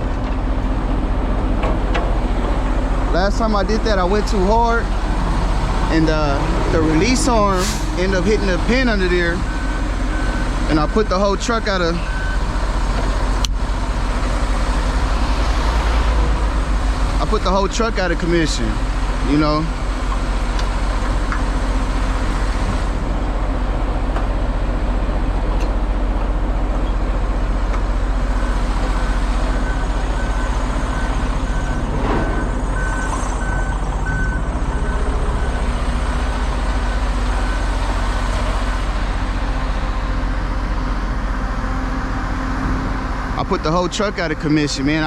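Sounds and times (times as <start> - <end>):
diesel truck engine rumble: 0.0 - 45.0
high reversing beeper: 3.2 - 12.5, 29.0 - 37.8.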